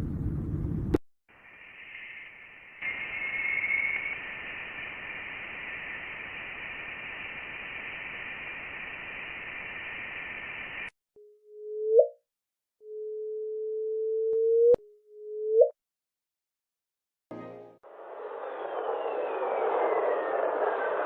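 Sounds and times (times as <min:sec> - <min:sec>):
static-like hiss: 0:01.4 - 0:10.9.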